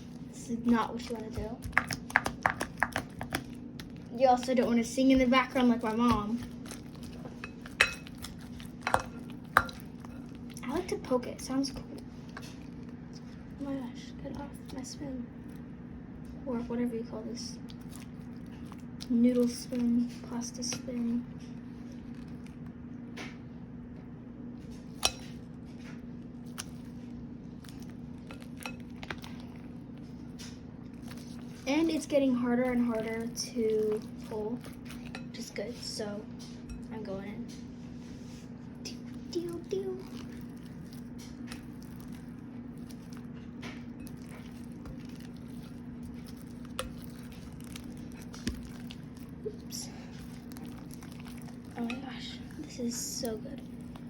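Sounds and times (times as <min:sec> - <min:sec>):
steady low hum: 0:00.0 - 0:54.0
slime squishing by hand: 0:24.7 - 0:36.6, 0:38.1 - 0:54.0.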